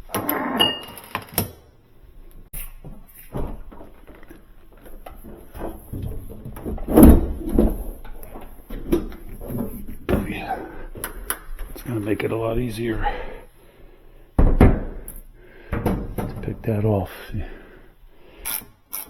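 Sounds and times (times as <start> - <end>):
loud thump: 14.4 - 15.0.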